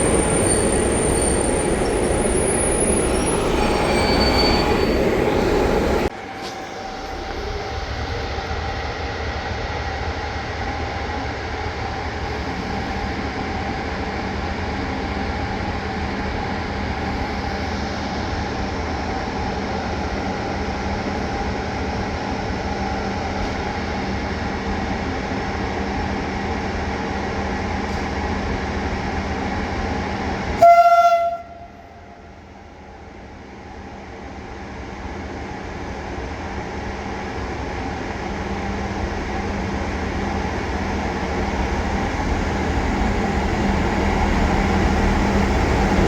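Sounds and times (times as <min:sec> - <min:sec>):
electric train rumbling: 0:00.0 - 0:46.0
train horn blast: 0:30.6 - 0:32.4.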